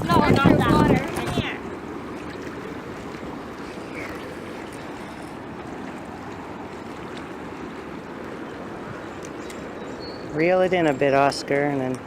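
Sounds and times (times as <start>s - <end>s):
wind on microphone: 0.0s - 10.4s
lake waves against pier: 0.0s - 12.0s.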